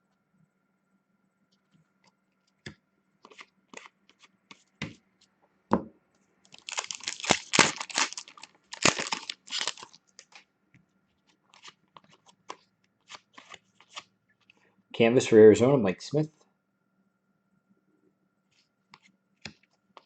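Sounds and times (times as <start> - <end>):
foil wrapper tearing and crinkling: 6.5 - 10.4.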